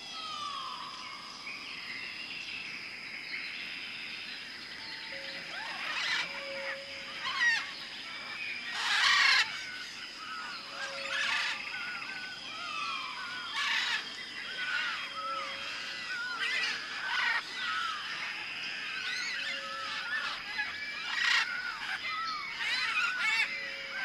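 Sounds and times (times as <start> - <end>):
high insect drone: 0.0 - 24.0
birds calling: 5.0 - 24.0.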